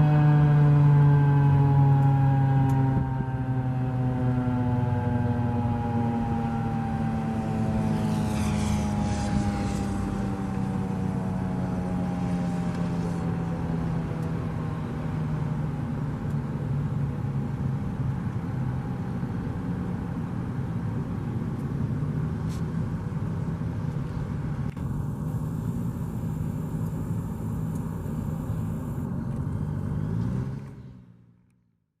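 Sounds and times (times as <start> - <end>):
warning siren winding down: 0.0 - 14.8.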